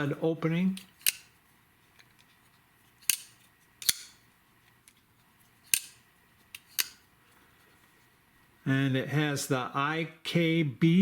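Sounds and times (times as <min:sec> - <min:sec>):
folding knife clicking open and shut: 0:00.7 - 0:01.3, 0:03.0 - 0:04.2, 0:05.7 - 0:07.0.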